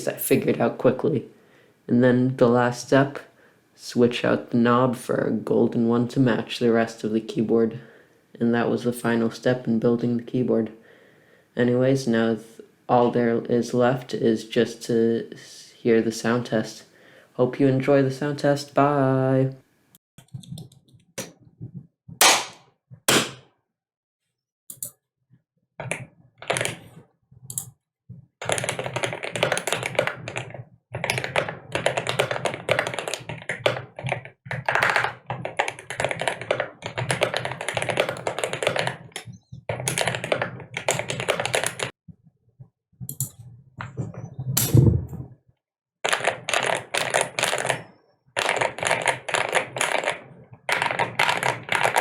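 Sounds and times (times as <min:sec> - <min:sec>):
mechanical keyboard typing: 0:25.8 - 0:26.9, 0:28.4 - 0:41.9, 0:46.1 - 0:47.8, 0:48.4 - 0:52.0.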